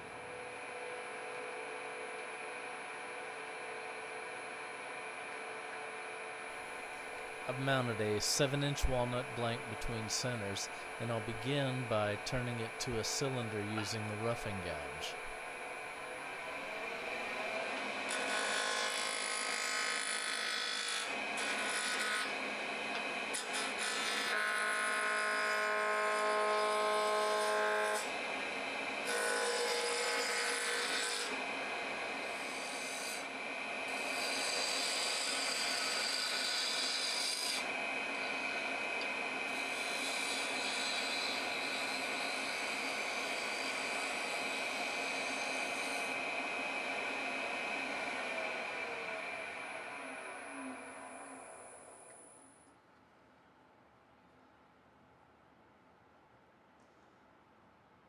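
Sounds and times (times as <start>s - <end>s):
lathe humming: 1.1s - 52.4s
gouge scraping wood on lathe: 18.1s - 22.3s, 29.1s - 31.4s, 32.4s - 33.2s, 33.9s - 38.4s, 39.6s - 46.2s.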